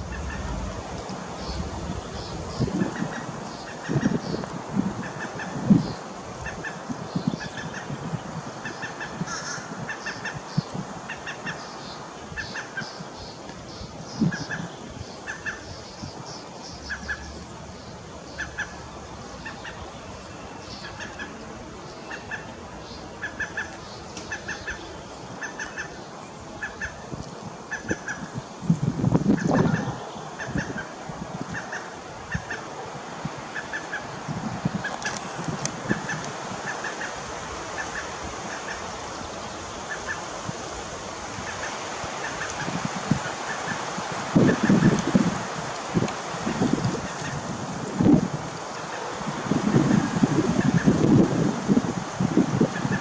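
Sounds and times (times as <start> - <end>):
waterfowl calling: 0.0 - 4.4, 8.6 - 10.5, 23.2 - 26.0, 26.6 - 27.1, 27.7 - 28.4, 29.3 - 32.8, 33.4 - 35.2, 35.8 - 40.3
background hiss: 0.0 - 53.0.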